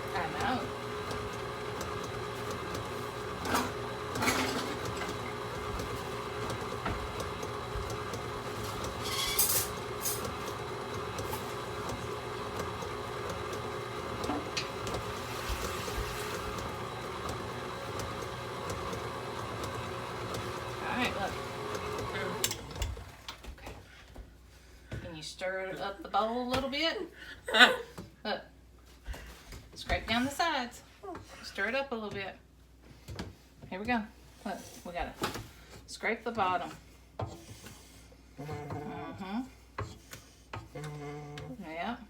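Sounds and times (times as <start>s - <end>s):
electric mixer beating batter: 0.0s - 23.4s.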